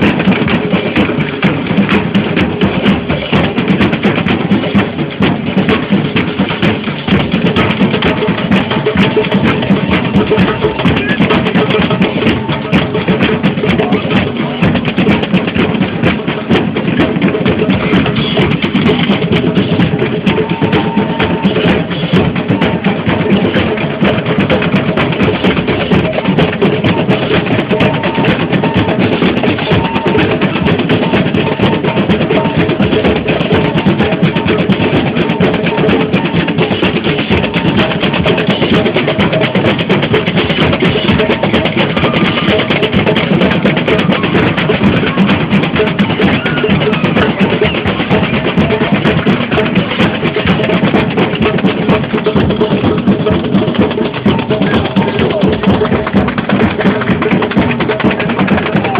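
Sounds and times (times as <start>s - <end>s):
drums and percussion beating: 0.0s - 58.9s.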